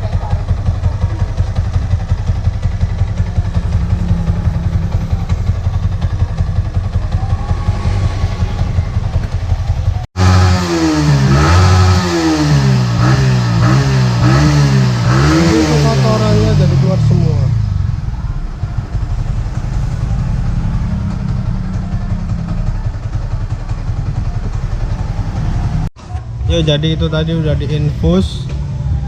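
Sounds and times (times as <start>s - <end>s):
motorcycle engine idling and revving: 0.0s - 29.0s.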